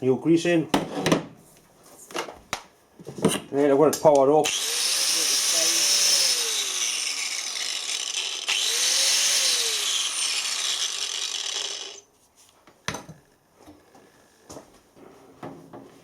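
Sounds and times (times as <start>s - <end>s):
angle grinder motor whine: 4.4s - 12.0s.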